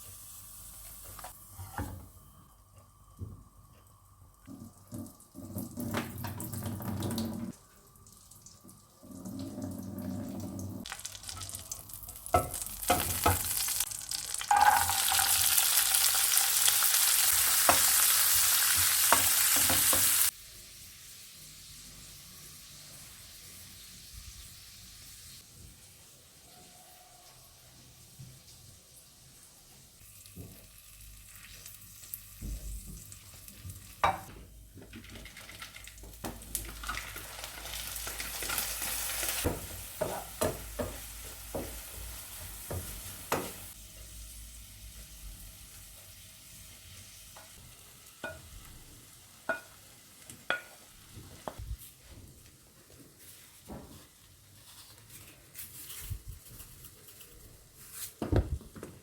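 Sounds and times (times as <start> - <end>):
food sizzling in a frying pan: 0.0 - 1.9, 10.8 - 34.3, 34.9 - 51.7.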